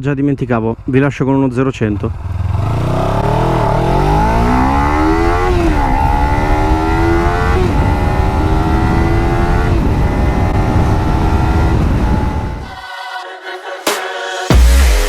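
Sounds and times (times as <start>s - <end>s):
motorcycle engine accelerating: 1.6s - 12.7s.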